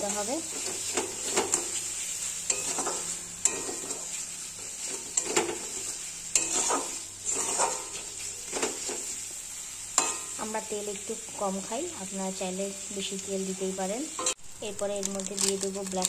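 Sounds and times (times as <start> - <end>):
spice paste sizzling in hot oil: 0.0 - 16.0
spoon scraping and knocking pan: 0.5 - 1.8, 2.5 - 4.1, 4.8 - 9.2.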